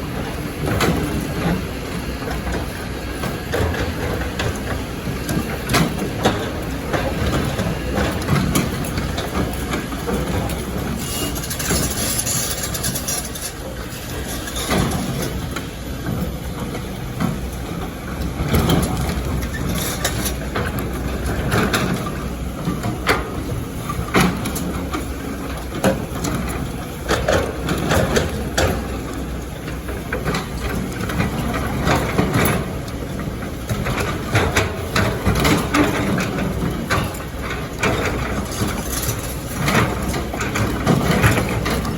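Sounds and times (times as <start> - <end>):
excavator engine running: 0.0 - 41.9.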